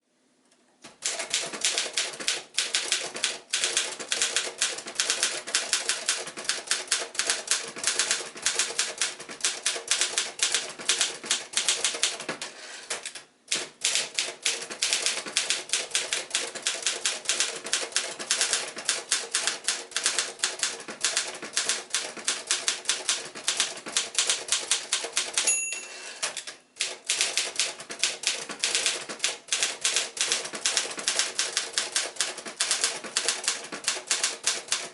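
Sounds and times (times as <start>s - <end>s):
typewriter bell ringing: 25.4s - 26.4s.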